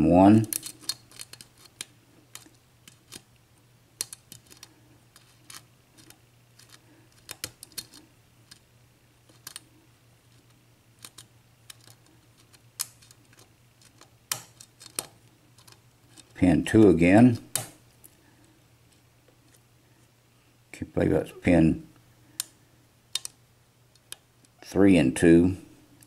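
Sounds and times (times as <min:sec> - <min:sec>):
faint low hum: 0:00.0 - 0:26.0
lock pick metallic clicks: 0:23.1 - 0:24.2.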